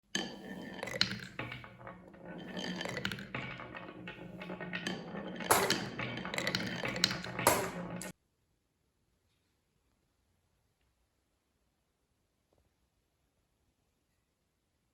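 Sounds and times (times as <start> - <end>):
marbles rolling on wooden track: 0.1 - 8.2.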